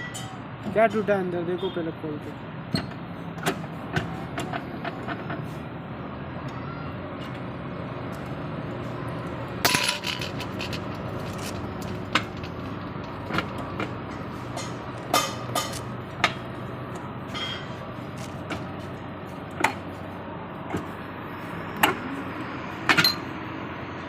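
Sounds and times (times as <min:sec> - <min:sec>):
steel tools clinking and knocking: 0:09.6 - 0:16.6, 0:17.3 - 0:18.3, 0:22.9 - 0:23.3.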